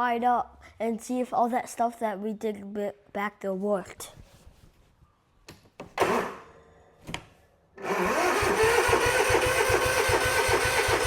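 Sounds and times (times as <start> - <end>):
lawn mower engine running: 7.8 - 11.0.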